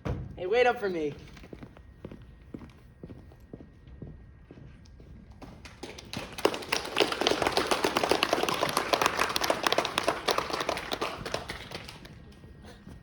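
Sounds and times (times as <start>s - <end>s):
audience clapping: 5.4s - 12.7s.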